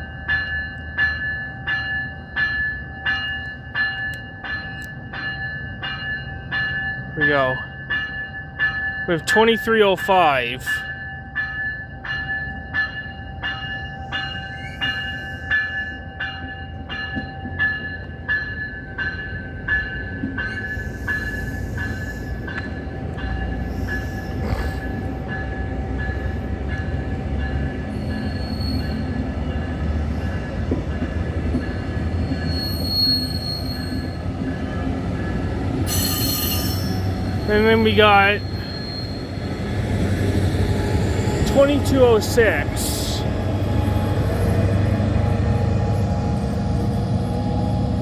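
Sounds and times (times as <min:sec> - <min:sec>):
train rumbling: 0:00.0 - 0:48.0
wheels squealing on rails: 0:13.9 - 0:16.1, 0:20.3 - 0:48.0
bell ringing: 0:35.9 - 0:39.2.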